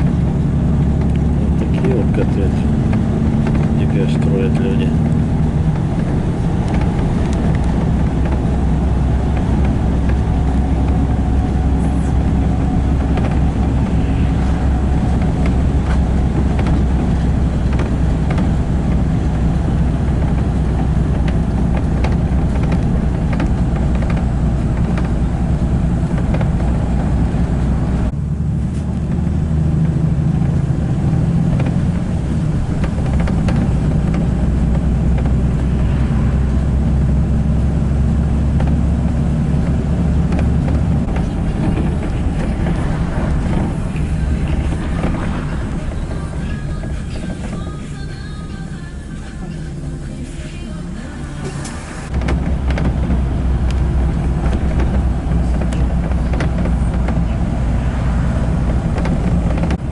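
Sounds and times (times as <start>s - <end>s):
vehicle rumble from inside: 0.0s - 59.9s.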